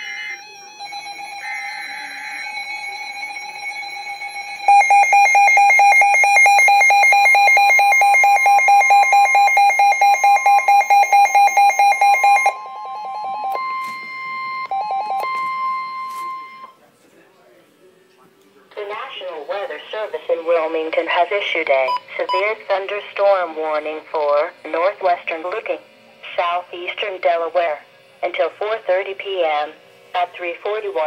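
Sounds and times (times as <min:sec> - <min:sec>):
two-tone attention signal: 0:00.0 - 0:16.8.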